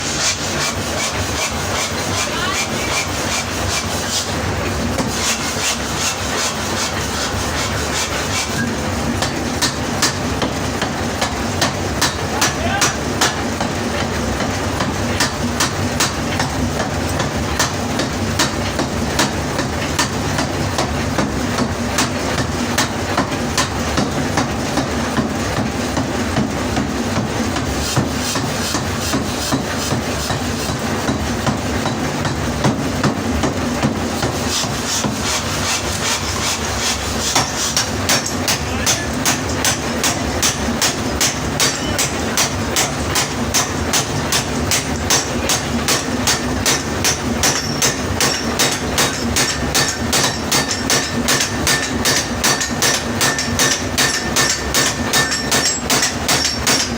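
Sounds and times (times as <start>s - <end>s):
forging hammer blows on metal: 33.8s - 56.9s.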